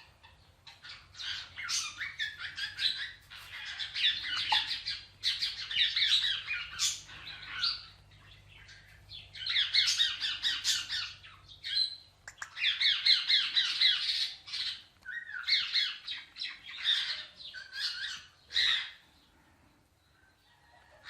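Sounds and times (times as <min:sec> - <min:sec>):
parrot squawking: 0:01.2 - 0:07.8.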